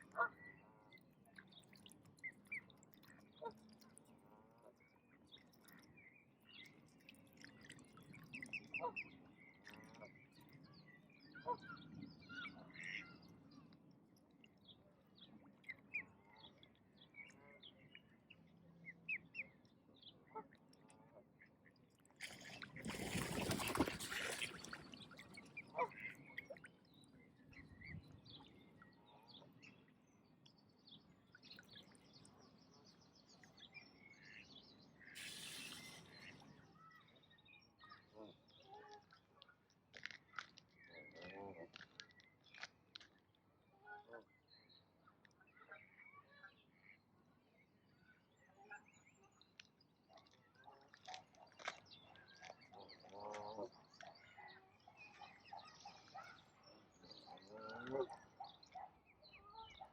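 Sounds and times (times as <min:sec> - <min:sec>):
short hiss: 0:35.2 - 0:36.3.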